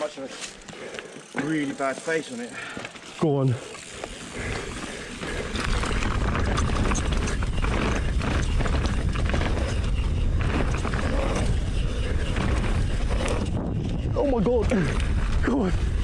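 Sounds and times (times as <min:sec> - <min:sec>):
bike clattering over rough ground: 0:00.0 - 0:16.0
wind rumble on microphone: 0:04.4 - 0:16.0.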